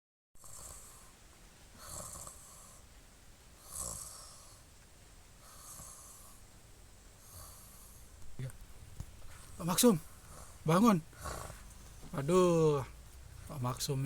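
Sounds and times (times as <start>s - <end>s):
man snoring: 0.4s - 1.1s, 1.8s - 2.8s, 3.6s - 4.6s, 5.5s - 6.4s, 10.3s - 12.9s.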